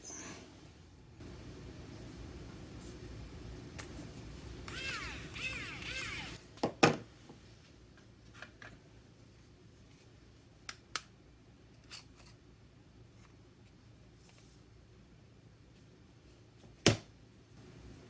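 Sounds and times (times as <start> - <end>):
short rising and falling whines: 4.7 - 6.4.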